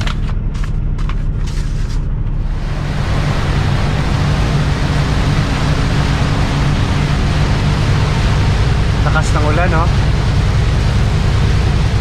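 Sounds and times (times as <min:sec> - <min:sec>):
truck engine drone: 0:00.0 - 0:12.0
heavy rain hissing on truck: 0:02.4 - 0:12.0.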